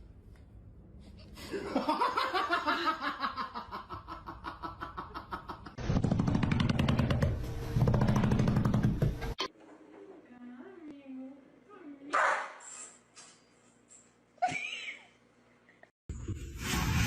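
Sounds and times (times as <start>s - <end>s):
laughter in quick pulses: 14.4s - 15.2s.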